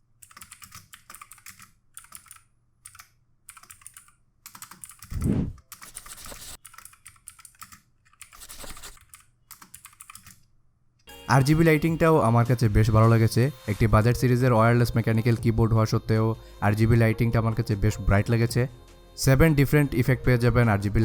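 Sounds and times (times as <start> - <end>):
mechanical keyboard typing: 0.2 - 10.4.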